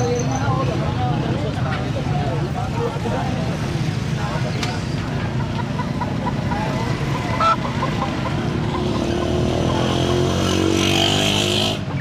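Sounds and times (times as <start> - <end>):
motor traffic rumble: 0.0 - 12.0
bird or fowl calls: 5.4 - 9.8
vehicle engine revving: 6.9 - 11.9.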